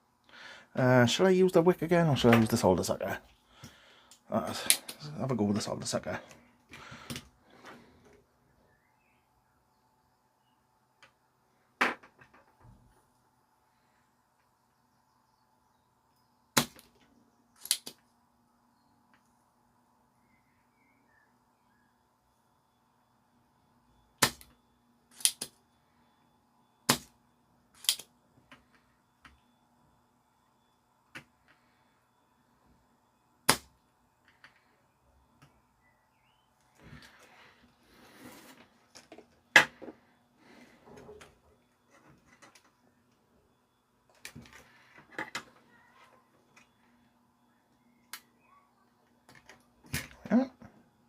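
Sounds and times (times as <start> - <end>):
faint steady hum: 0.0 - 51.0
desoldering pump snapping: 25.1 - 25.5.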